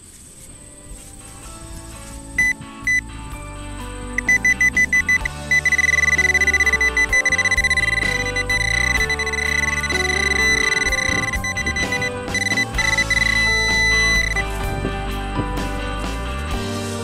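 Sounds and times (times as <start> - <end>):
music with stepping melody: 0.8 - 17.0
high electronic beep: 2.4 - 3.0, 4.2 - 14.6.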